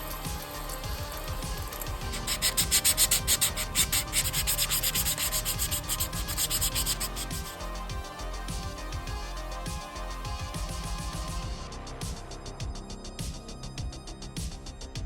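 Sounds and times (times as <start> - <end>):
sandpaper rubbing on plastic: 0.0 - 7.6.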